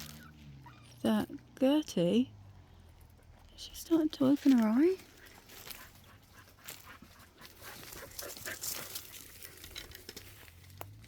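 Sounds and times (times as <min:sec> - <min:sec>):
dog panting: 0:05.1 - 0:09.2.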